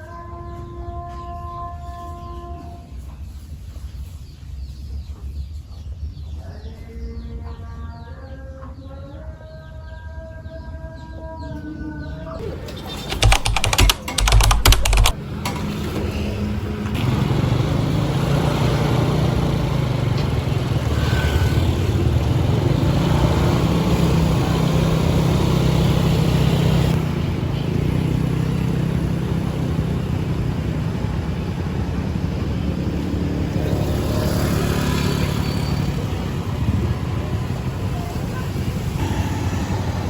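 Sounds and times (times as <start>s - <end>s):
road noise: 12.4s - 40.0s
vehicle engine running: 12.4s - 40.0s.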